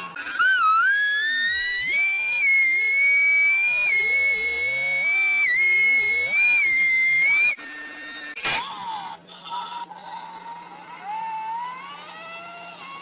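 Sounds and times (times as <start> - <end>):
high whistling tone: 0.3 - 8.4.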